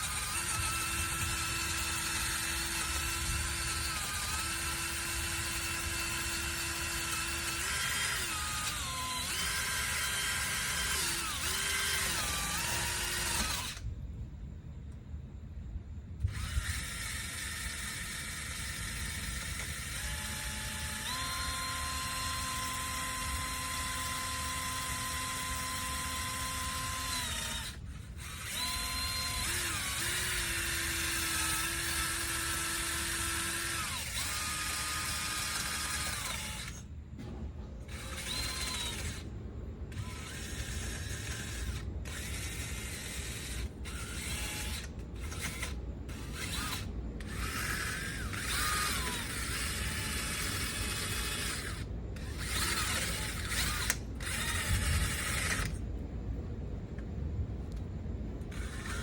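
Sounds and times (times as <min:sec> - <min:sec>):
power ratchet whining: 0:00.0 - 0:14.0, 0:16.1 - 0:55.9, 0:58.4 - 0:59.0.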